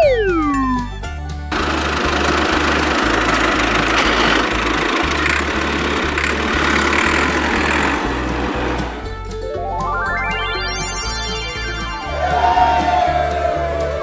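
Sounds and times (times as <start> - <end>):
engine-like running noise: 0.0 - 9.6
music with bass beat: 0.0 - 14.0.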